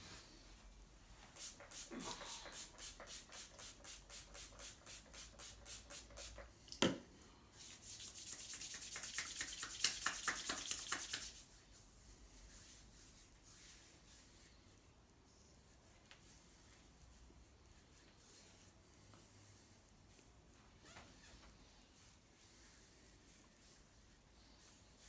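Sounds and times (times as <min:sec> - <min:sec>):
hands rubbing over skin: 0:01.3 - 0:06.4, 0:07.6 - 0:11.8.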